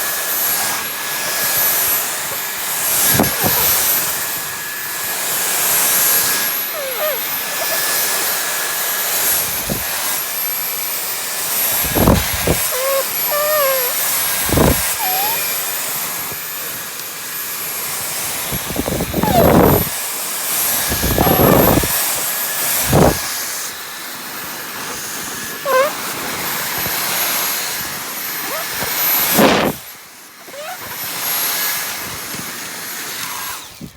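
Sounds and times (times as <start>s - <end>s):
vacuum cleaner running: 0.0s - 33.9s
short squeaks: 3.0s - 4.1s, 6.7s - 8.2s, 11.8s - 15.6s, 19.2s - 19.8s, 21.0s - 21.8s, 25.6s - 26.0s, 28.4s - 29.7s, 30.5s - 31.0s.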